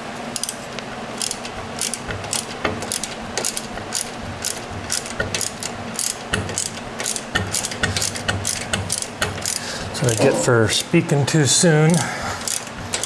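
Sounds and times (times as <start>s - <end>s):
ratchet wrench clicking: 0.4s - 0.6s, 1.2s - 10.3s, 11.9s - 13.0s.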